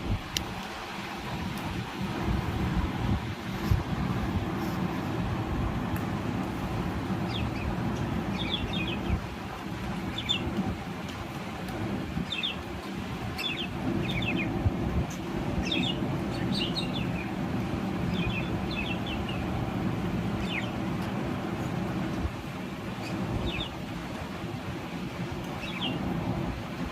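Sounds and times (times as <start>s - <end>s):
steady low rumble: 0.0s - 26.9s
budgerigars chirping: 7.3s - 9.2s, 10.1s - 10.5s, 12.2s - 12.6s, 13.4s - 17.4s, 18.1s - 19.5s, 20.4s - 20.8s, 23.0s - 23.8s, 25.6s - 26.0s.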